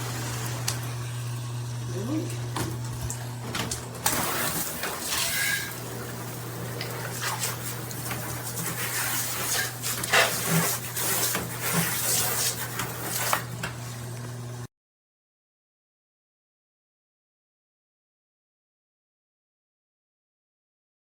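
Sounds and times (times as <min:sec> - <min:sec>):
shower head spraying water: 0:00.0 - 0:14.5.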